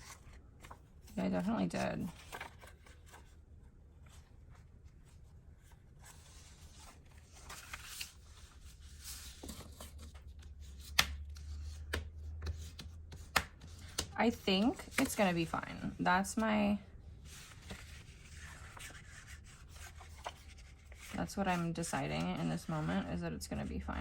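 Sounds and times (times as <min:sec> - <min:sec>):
paper rustling and rubbing: 0:04.0 - 0:16.4, 0:17.2 - 0:23.1.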